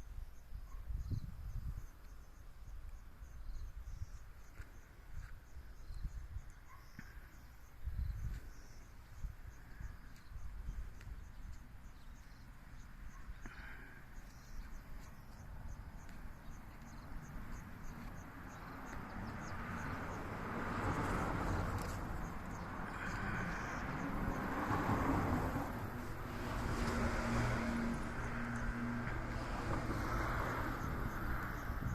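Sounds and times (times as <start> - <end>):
insects chirping: 0.0 - 31.9
vehicle engine approaching: 14.2 - 31.9.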